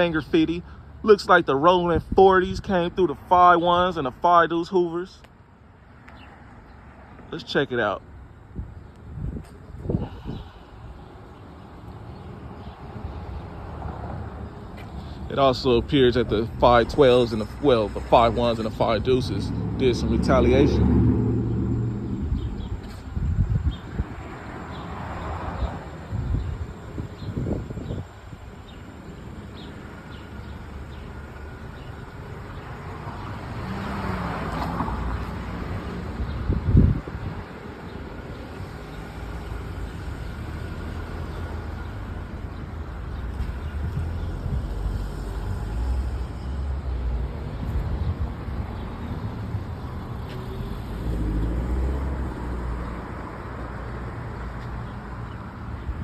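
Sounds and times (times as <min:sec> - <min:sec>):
street traffic rumble: 0:00.0 - 0:56.0
vehicle passing by: 0:12.9 - 0:26.5, 0:32.5 - 0:37.4, 0:43.2 - 0:56.0.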